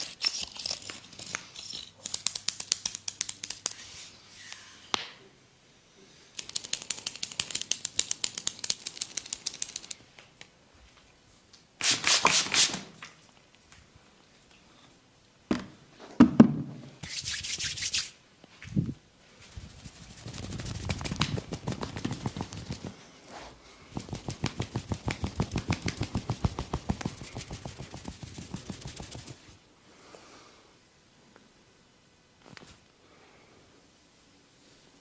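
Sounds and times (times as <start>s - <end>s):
hands rubbing bare skin: 0.0s - 4.6s, 17.0s - 18.2s, 19.4s - 29.6s.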